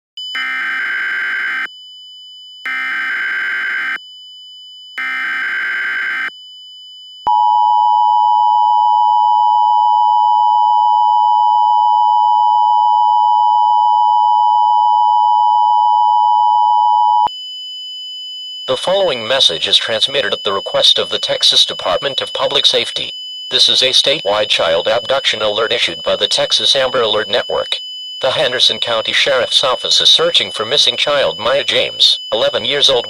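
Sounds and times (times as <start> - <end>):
buzzy screeching data bursts: 18.7 - 33.0.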